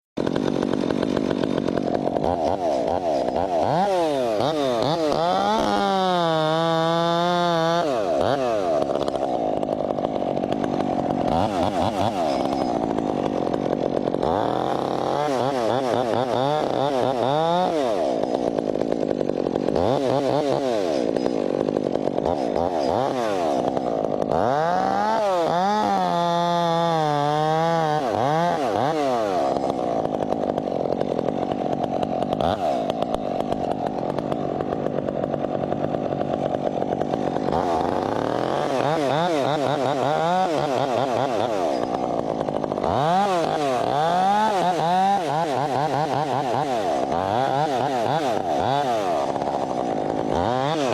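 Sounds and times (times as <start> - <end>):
chainsaw revving: 0.2 - 50.9.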